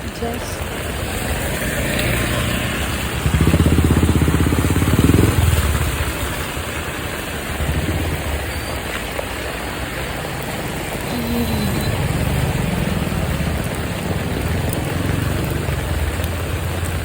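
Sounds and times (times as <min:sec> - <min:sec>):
steady rain: 0:00.0 - 0:17.0
vehicle engine passing by: 0:00.8 - 0:06.7, 0:11.6 - 0:17.0.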